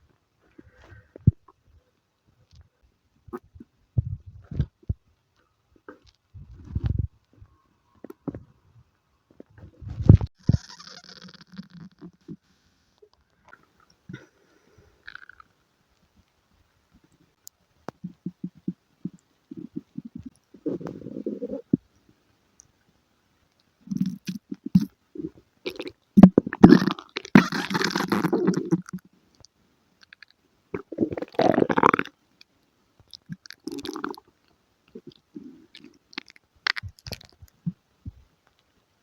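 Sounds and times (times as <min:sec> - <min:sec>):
stomach gurgling: 0:00.4 - 0:01.6, 0:03.3 - 0:08.6, 0:09.3 - 0:14.4, 0:15.1 - 0:15.5, 0:17.0 - 0:22.1, 0:23.8 - 0:29.1, 0:30.0 - 0:32.2, 0:33.1 - 0:38.2.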